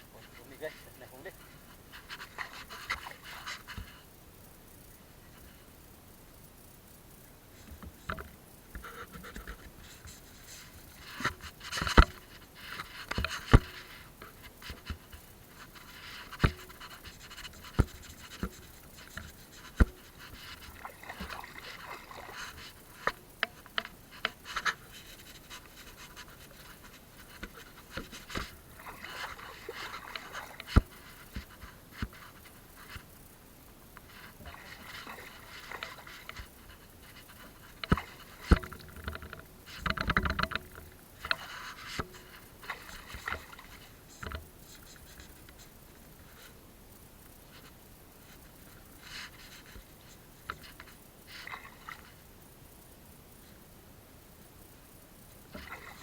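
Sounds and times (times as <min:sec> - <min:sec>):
water splashing: 0:19.9 - 0:23.6, 0:26.6 - 0:31.7, 0:34.2 - 0:36.7, 0:41.2 - 0:44.3, 0:55.6 - 0:56.0.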